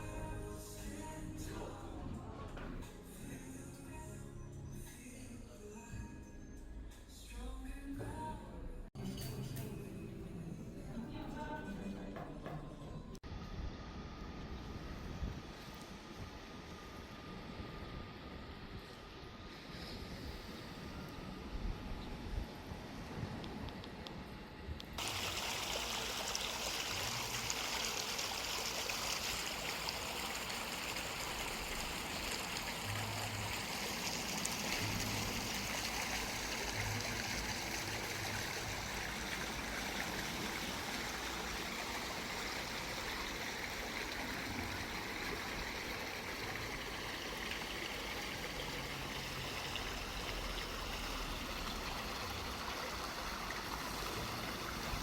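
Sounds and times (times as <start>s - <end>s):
running water rushing: 25.0s - 55.0s.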